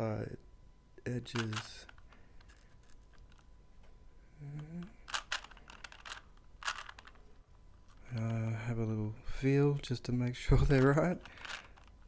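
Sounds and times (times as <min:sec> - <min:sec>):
puzzle cube plastic clacks: 0:01.3 - 0:03.5, 0:04.5 - 0:08.5, 0:10.5 - 0:12.0.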